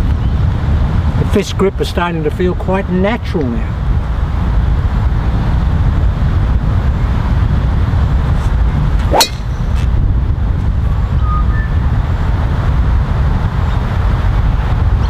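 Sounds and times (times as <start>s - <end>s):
wind buffeting microphone: 0.0s - 15.0s
golf club striking ball: 9.0s - 9.9s.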